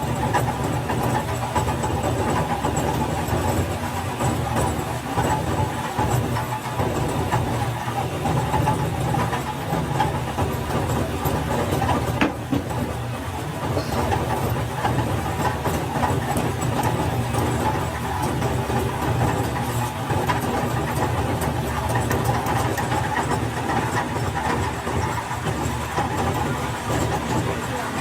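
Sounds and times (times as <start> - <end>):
factory machinery humming: 26.2 - 28.0.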